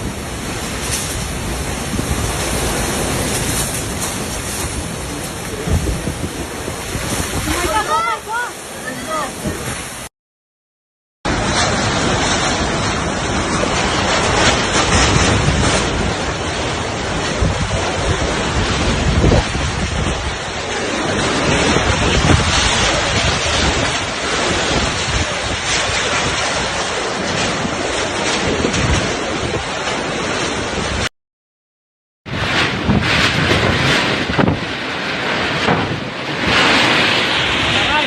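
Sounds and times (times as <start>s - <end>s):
wind blowing on microphone: 0.0s - 10.1s, 11.3s - 31.1s, 32.3s - 38.0s.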